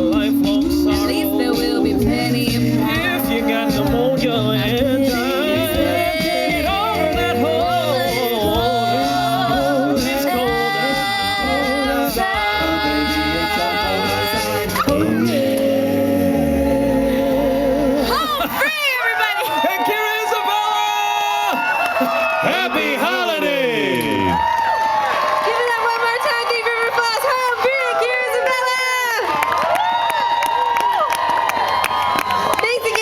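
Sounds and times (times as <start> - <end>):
a cappella group singing harmony: 0.0 - 18.6.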